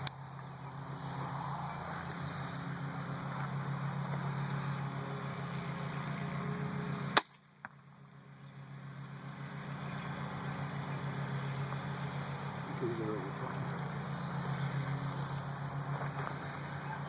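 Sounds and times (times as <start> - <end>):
steady low hum: 0.0 - 17.0
arrow striking target: 7.1 - 7.8.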